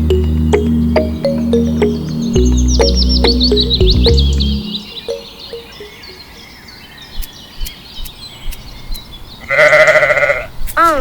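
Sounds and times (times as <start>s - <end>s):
faint bird chirps: 2.3s - 9.5s
small animal bleating: 9.4s - 11.0s.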